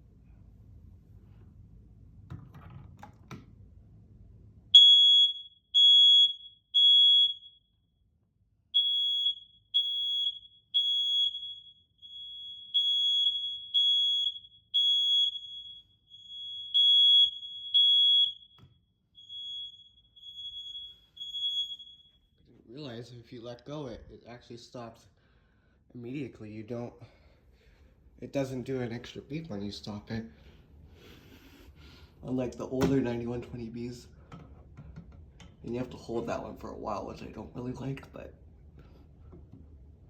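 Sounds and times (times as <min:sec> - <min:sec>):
second fainter alarm beeping: 0:04.8 - 0:07.8, 0:08.8 - 0:22.2
smoke alarm beeping: 0:04.8 - 0:07.9, 0:08.7 - 0:22.3.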